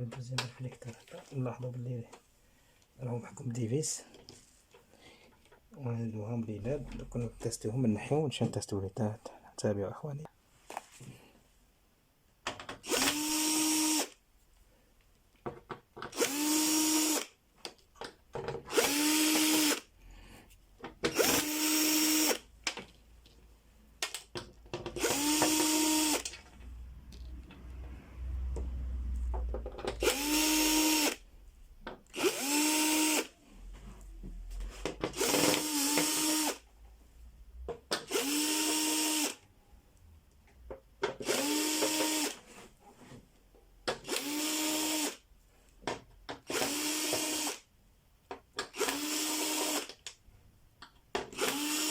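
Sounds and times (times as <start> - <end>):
electric screwdriver whine: 12.9 - 14.2, 16.2 - 17.3, 18.7 - 19.9, 21.1 - 22.4, 25.0 - 26.3, 30.0 - 31.2, 32.2 - 33.3, 35.2 - 36.6, 38.1 - 39.4, 46.5 - 47.6, 48.8 - 49.9, 51.4 - 51.9.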